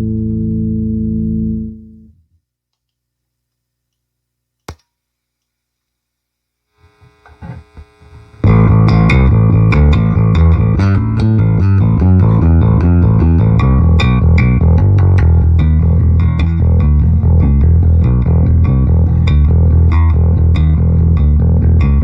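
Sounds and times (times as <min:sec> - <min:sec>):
electric bass through tube amplifier: 0:00.0 - 0:02.2, 0:06.8 - 0:22.0.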